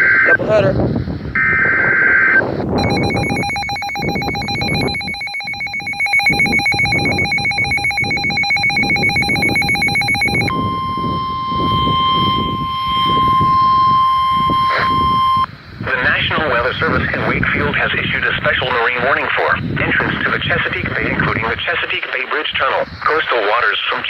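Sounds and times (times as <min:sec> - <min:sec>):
warbling electronic alarm: 0:00.0 - 0:00.6, 0:01.4 - 0:15.5
steady single-pitch alarm tone: 0:01.4 - 0:15.5.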